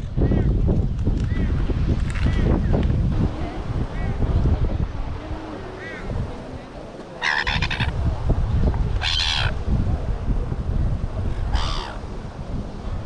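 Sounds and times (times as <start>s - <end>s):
surf: 0.0s - 13.0s
wind: 0.0s - 13.0s
bird giving harsh calls: 7.2s - 8.0s, 9.0s - 9.6s, 11.5s - 12.0s.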